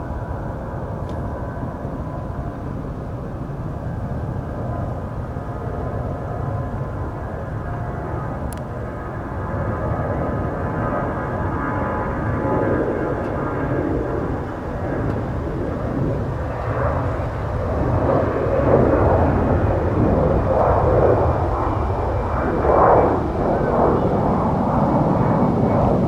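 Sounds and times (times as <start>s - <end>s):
jet engine taking off: 5.5s - 26.0s.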